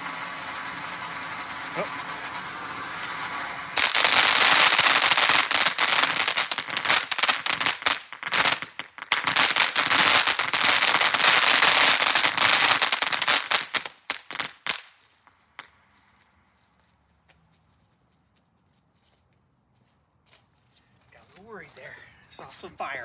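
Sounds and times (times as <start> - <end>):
firecrackers banging: 0.0 - 16.2.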